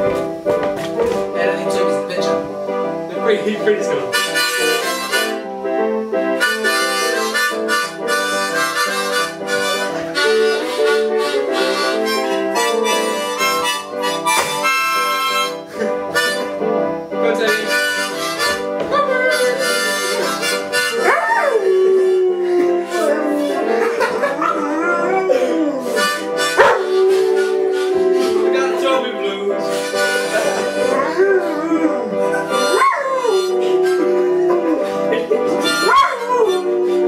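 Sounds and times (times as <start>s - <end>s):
blues harmonica playing: 0.0s - 37.0s
dog howling: 20.9s - 37.0s.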